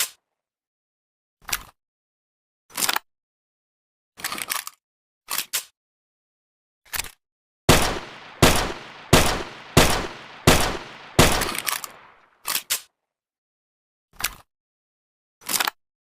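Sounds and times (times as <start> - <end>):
mechanical clicks: 7.7 - 12.1
gunshot bangs with echo: 7.7 - 12.2.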